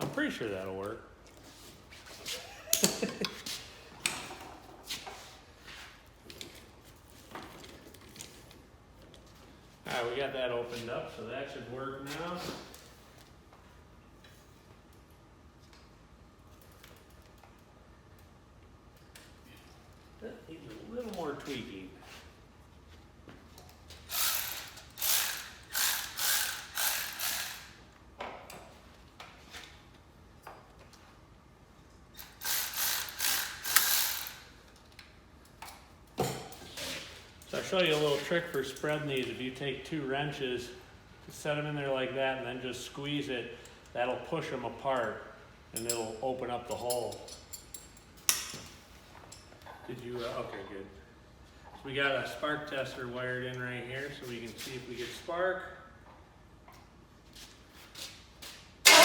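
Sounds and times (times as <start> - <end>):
ratchet wrench clicking: 24.1 - 27.8, 32.2 - 34.5.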